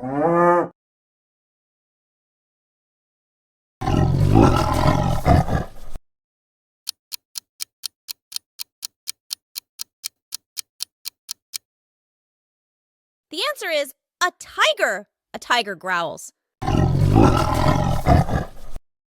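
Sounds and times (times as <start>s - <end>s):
tiger growling: 3.8s - 6.0s, 16.6s - 18.8s
clock ticking: 6.9s - 11.6s.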